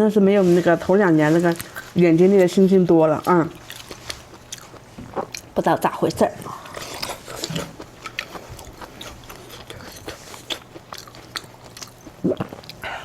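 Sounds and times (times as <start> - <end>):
person chewing and crunching: 3.2 - 13.0.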